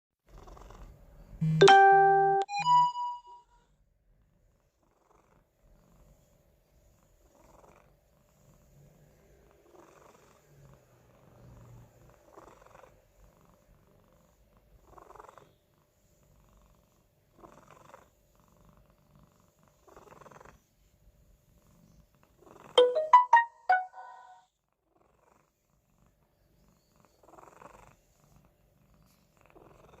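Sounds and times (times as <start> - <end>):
pet snoring softly: 0.2 - 1.2, 4.5 - 22.8, 24.9 - 30.0
bright chiming notes: 1.4 - 3.4, 22.8 - 24.4.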